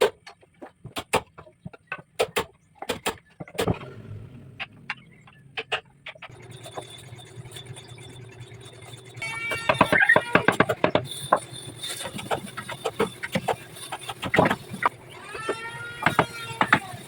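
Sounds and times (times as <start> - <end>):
faint high whine: 6.3 - 17.0
low machine hum: 6.3 - 17.0.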